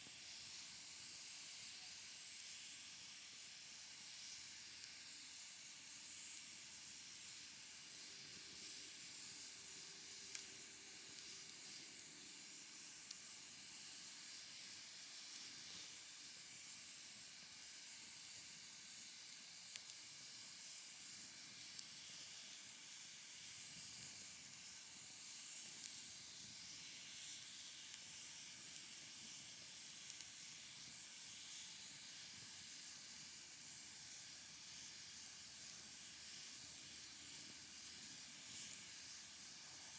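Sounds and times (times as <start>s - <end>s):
wood fire hissing and crackling: 0.0s - 39.9s.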